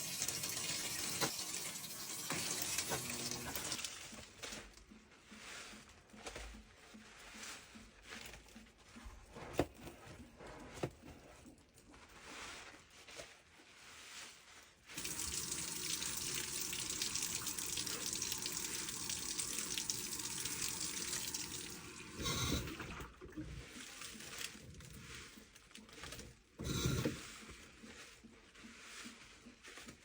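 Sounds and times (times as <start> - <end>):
washing machine filling water: 0.0 - 4.4, 14.9 - 24.9
water trickling: 15.0 - 24.5.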